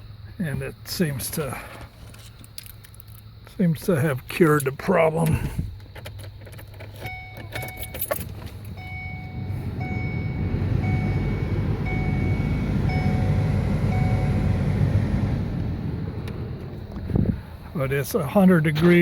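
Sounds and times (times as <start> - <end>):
car warning chime: 7.0 - 16.6
car blower fan air rush: 8.8 - 17.8.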